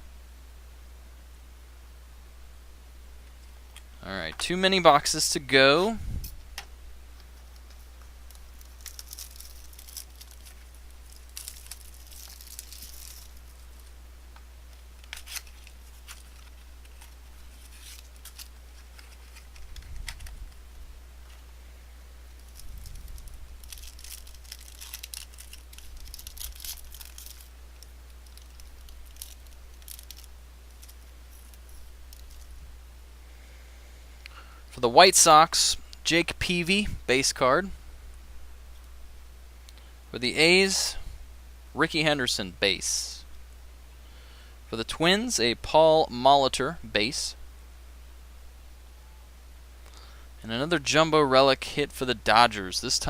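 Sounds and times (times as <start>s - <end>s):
steady low hum: 0.0s - 53.0s
foil wrappers crinkling: 7.2s - 14.0s, 14.7s - 20.6s, 22.3s - 32.5s.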